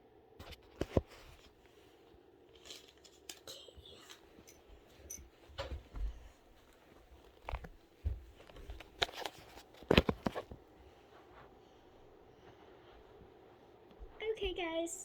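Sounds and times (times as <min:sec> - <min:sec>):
rustling: 0:00.6 - 0:14.2
soft thumps: 0:07.1 - 0:09.0.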